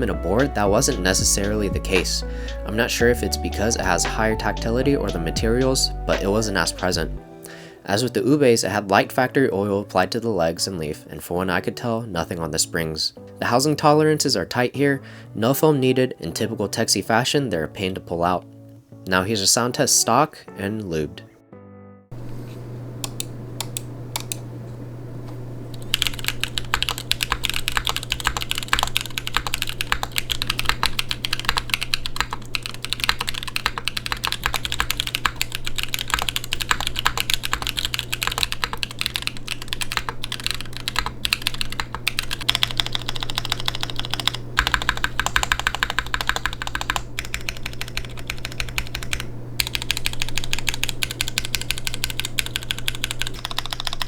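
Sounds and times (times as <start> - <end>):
steady low hum: 0.0 - 7.9, 22.1 - 54.0.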